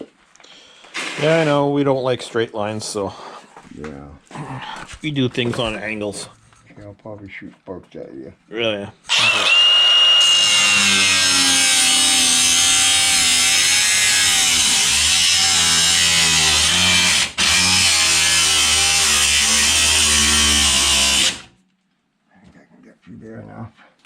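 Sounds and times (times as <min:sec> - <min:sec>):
cut-off wheel grinding steel: 0:09.1 - 0:21.5.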